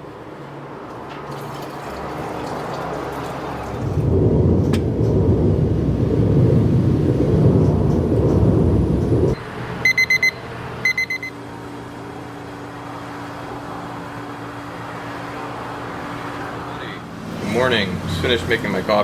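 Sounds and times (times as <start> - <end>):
coffee machine rumbling: 1.2 - 9.4
electronic beeps: 9.8 - 11.4.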